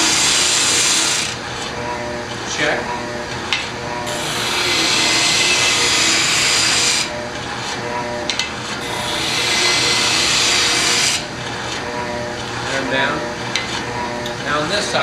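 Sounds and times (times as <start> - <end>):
wood rasping on sanding drum: 0.0 - 1.4, 4.1 - 7.1, 8.8 - 11.3
sander motor humming: 0.0 - 14.4.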